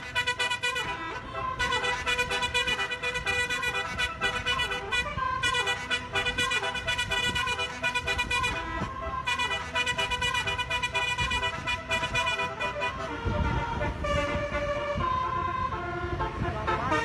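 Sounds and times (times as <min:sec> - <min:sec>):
musical horn playing a melody: 0:00.0 - 0:17.0.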